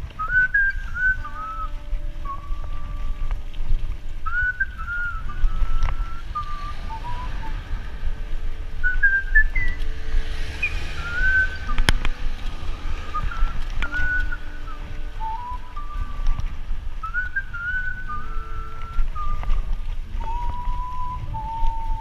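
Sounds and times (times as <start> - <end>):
low rumble: 0.0 - 22.0
person whistling a tune: 0.2 - 3.2, 4.2 - 7.7, 8.8 - 9.8, 10.6 - 11.9, 13.1 - 16.4, 17.0 - 22.0.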